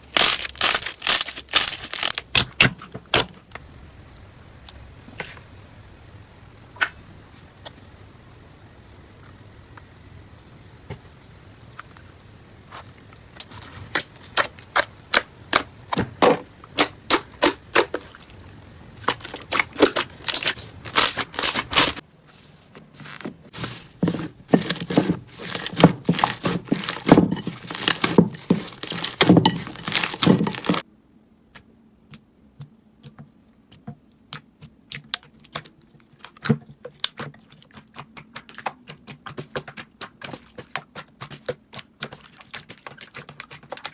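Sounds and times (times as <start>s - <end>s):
slime clicking and crackling: 0.0s - 2.6s, 19.0s - 22.0s, 24.6s - 30.8s.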